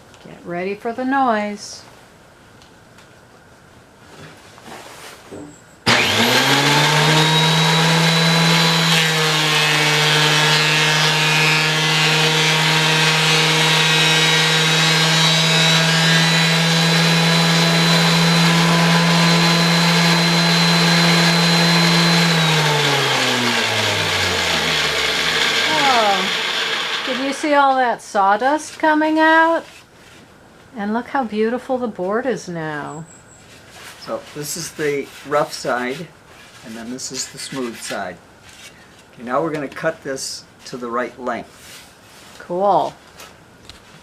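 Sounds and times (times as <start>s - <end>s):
motor winding down: 5.9s - 27.6s
thickness planer cutting board: 5.9s - 27.7s.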